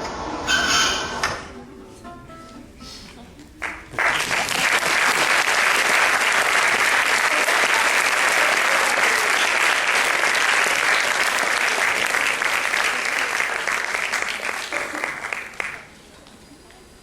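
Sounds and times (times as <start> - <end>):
audience applauding: 3.6 - 16.0.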